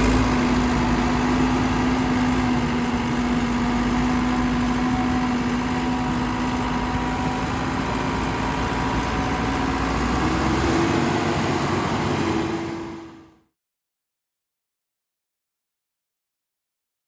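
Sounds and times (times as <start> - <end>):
diesel engine running: 0.0 - 13.5.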